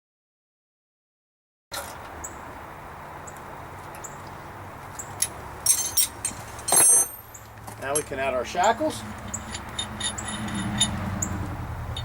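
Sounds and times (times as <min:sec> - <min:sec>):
metal clinks with ringing: 0:05.2 - 0:12.0.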